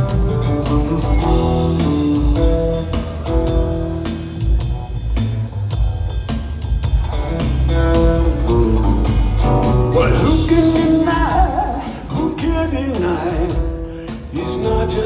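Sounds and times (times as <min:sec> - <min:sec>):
live blues rock band: 0:00.0 - 0:15.0
person singing: 0:09.9 - 0:15.0.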